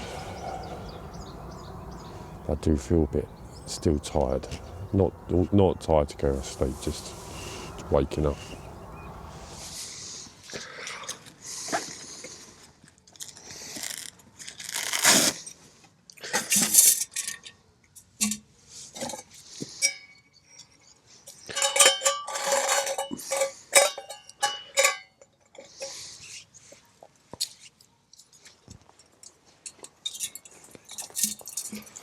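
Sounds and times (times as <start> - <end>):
metal cookware clinking and rattling: 21.4 - 25.1
metal cookware rustling and scraping: 21.5 - 25.0.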